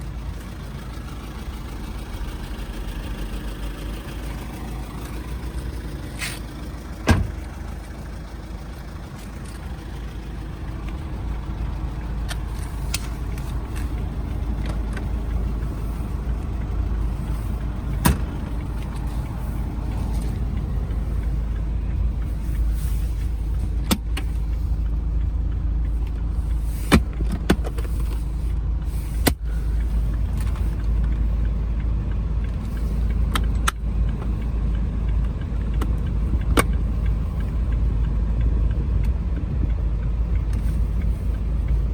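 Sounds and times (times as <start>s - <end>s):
car engine running: 0.0s - 41.9s
sharp clicks and knocks: 9.1s - 41.9s.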